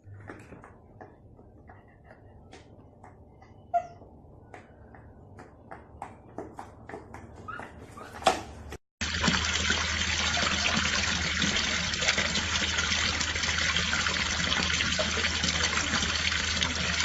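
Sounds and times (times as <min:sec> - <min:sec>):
running water rushing: 0:09.0 - 0:17.0.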